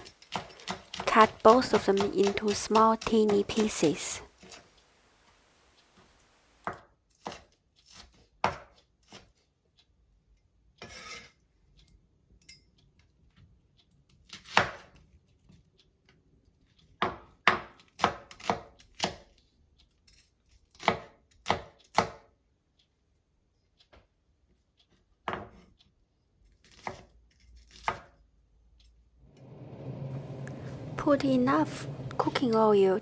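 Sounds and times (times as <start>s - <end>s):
knife chopping on a board: 6.6s - 9.2s, 14.4s - 14.9s, 17.0s - 19.3s, 20.7s - 22.3s, 26.7s - 28.2s
knife scraping board: 10.8s - 11.4s.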